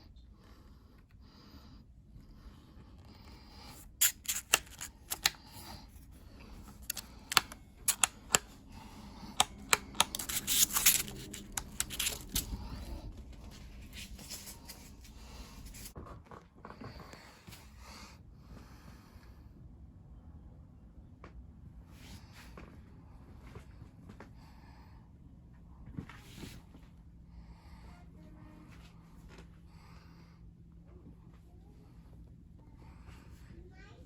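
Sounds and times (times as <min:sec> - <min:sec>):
packaging rustling and tearing: 0:03.8 - 0:05.4, 0:06.8 - 0:08.5, 0:09.3 - 0:13.0
sharp clicks and snaps: 0:06.7 - 0:08.6.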